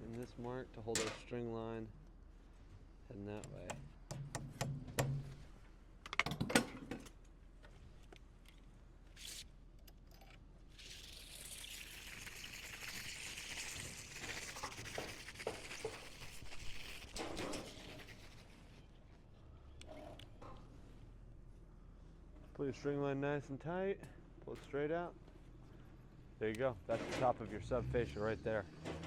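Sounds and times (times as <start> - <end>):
hammer knocking nail: 3.6 - 5.3.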